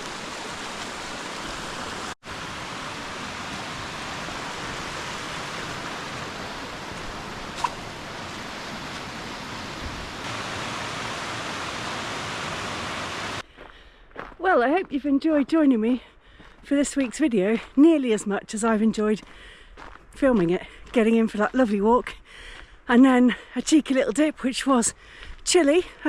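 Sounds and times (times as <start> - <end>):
running water rushing: 0.0 - 13.4.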